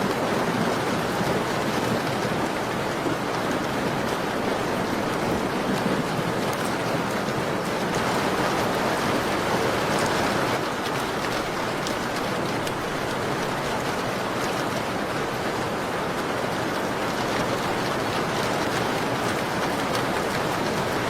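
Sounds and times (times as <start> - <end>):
rain pattering on a window: 0.0 - 21.0.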